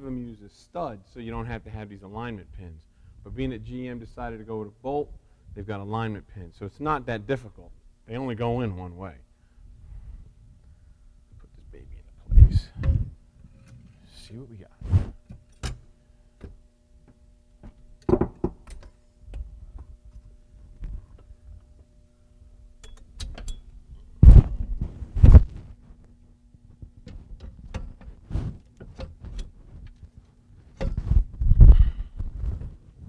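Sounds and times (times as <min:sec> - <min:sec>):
metal clunks and knocks: 0:30.8 - 0:31.1.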